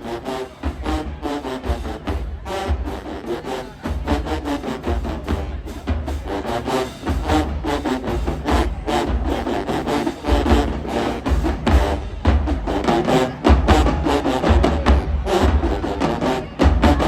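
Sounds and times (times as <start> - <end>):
brass phrases: 0.0 - 17.0
drumline beating: 0.0 - 17.0
marching band playing: 0.0 - 17.0.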